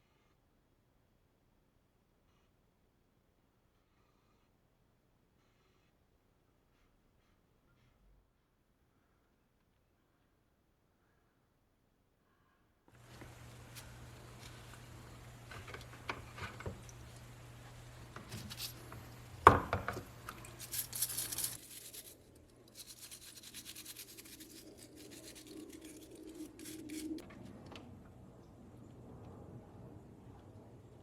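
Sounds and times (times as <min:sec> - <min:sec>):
taps and scrapes: 0:13.0 - 0:27.3
quick clicks and scratching: 0:20.5 - 0:27.3.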